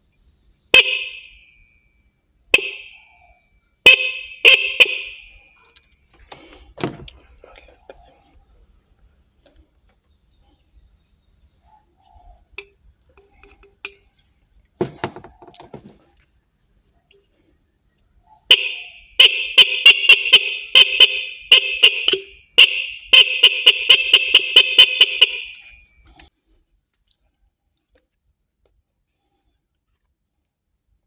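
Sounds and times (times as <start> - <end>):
motorcycle horn blaring: 0.8 - 1.4, 2.6 - 3.0, 3.9 - 5.4, 18.5 - 25.9
handling clatter: 14.8 - 16.1.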